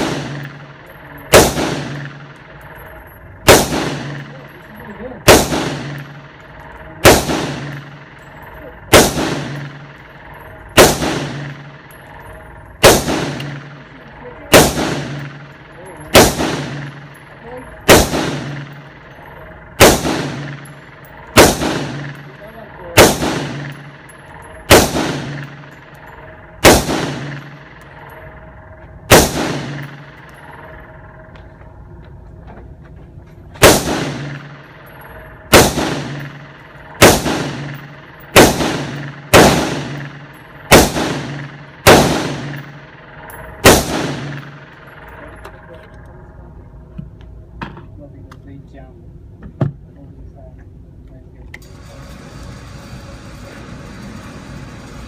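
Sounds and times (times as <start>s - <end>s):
gunshots with ringing echo: 0.0s - 31.9s, 33.5s - 46.6s.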